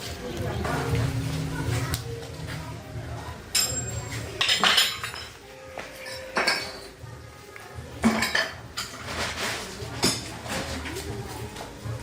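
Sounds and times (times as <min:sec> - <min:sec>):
hard objects clinking and clattering: 0:03.5 - 0:05.4, 0:08.0 - 0:11.2.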